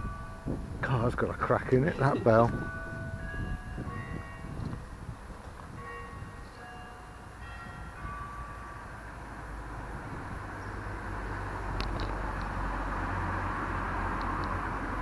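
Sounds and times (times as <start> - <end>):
vehicle engine and tyre noise: 0.0 - 15.0
bell ringing tone: 1.7 - 4.6.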